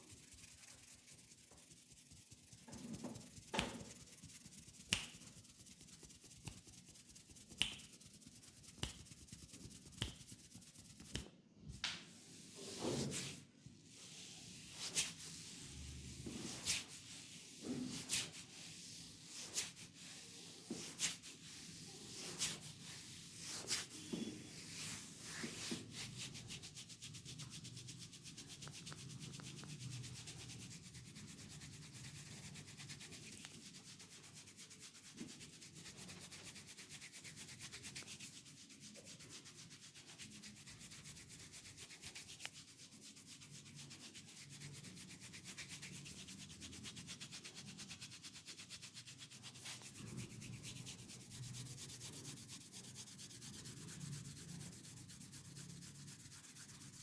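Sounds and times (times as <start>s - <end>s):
hands rubbing skin and hair: 0.0s - 13.4s, 14.1s - 15.6s, 16.2s - 57.0s
sharp taps or slaps: 4.9s - 5.3s, 7.6s - 8.0s, 8.8s - 9.2s, 9.9s - 10.4s.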